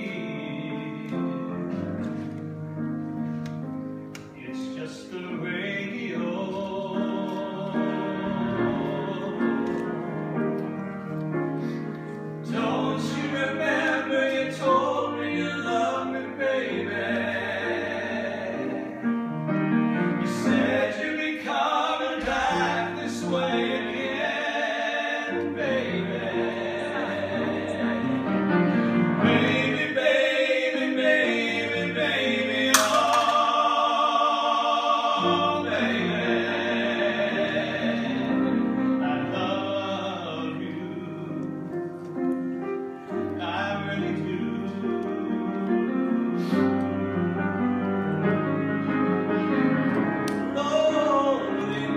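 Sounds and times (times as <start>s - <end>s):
instrumental accompaniment: 6.5s - 51.9s.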